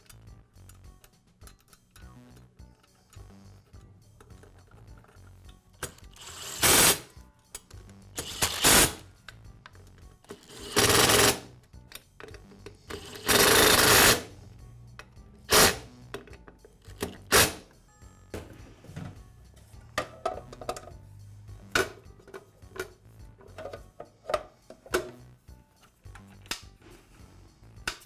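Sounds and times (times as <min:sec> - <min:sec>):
cordless power driver bursts: 0:06.1 - 0:07.1, 0:08.2 - 0:09.0, 0:10.4 - 0:11.5, 0:13.0 - 0:14.3, 0:15.5 - 0:15.9.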